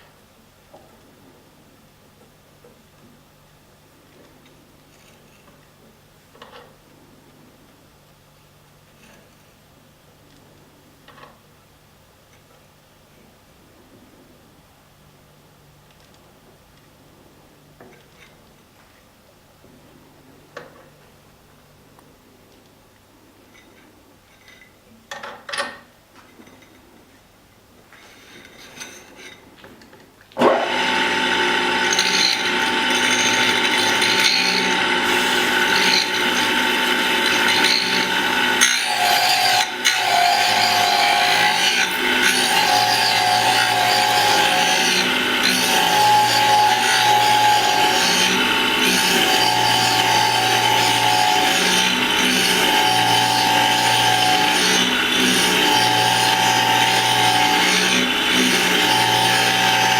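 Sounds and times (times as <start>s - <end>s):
grinder whining: 30.4s - 59.9s.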